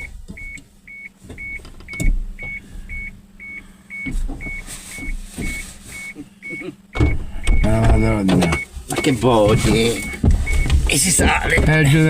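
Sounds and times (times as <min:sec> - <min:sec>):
car warning chime beeping: 0:00.0 - 0:12.0
steady low hum: 0:00.0 - 0:12.0
dull thumps: 0:06.9 - 0:12.0.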